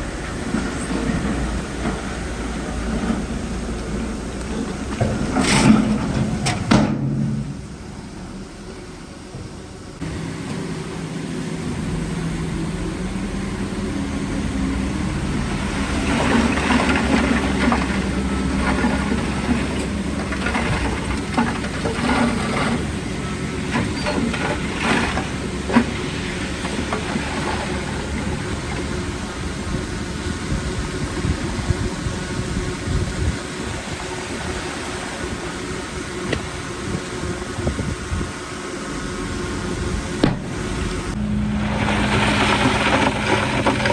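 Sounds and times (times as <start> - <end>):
heavy diesel machinery running: 0.0 - 43.9
rattling and clanking: 2.8 - 8.2, 15.6 - 29.7, 40.2 - 43.9.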